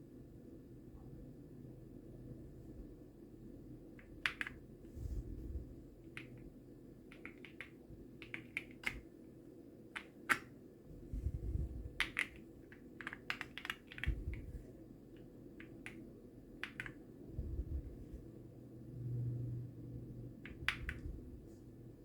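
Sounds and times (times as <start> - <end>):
clicky keyboard keystrokes: 4.0 - 4.6, 7.1 - 9.0, 10.0 - 10.5, 12.0 - 14.4, 16.6 - 17.0, 20.4 - 21.0.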